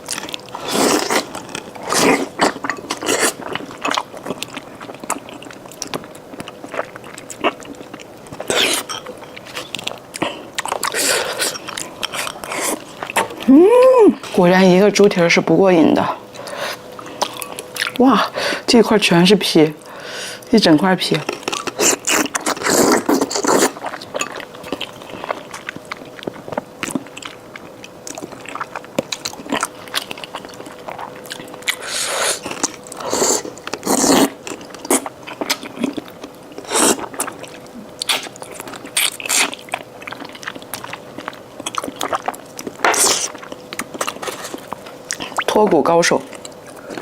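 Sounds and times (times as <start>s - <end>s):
wet chewing and smacking: 0.0s - 13.5s, 16.2s - 18.1s, 21.1s - 47.0s
faint steady hum: 0.0s - 47.0s
bites: 21.3s - 45.5s.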